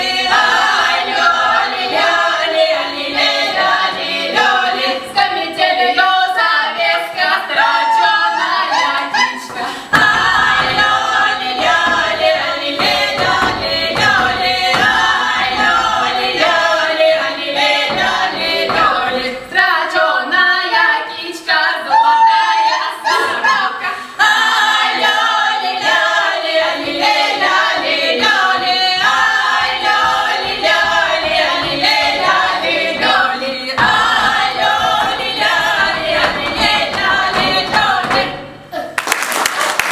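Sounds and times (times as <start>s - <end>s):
women singing a cappella: 0.0s - 39.0s
singers breathing: 9.6s - 10.0s, 23.2s - 24.2s.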